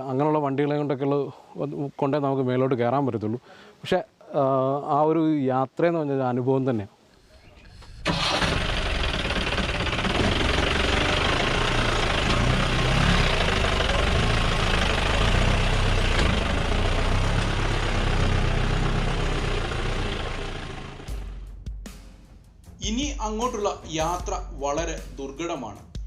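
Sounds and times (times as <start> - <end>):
off-road vehicle engine running: 7.9 - 21.5.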